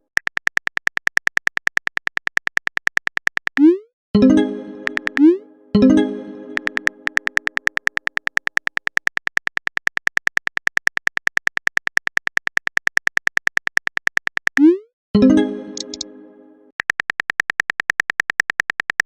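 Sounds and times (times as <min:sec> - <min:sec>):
phone keyboard typing clicks: 0:00.0 - 0:03.7, 0:04.8 - 0:05.3, 0:06.5 - 0:14.7, 0:15.8 - 0:16.0, 0:16.8 - 0:19.0.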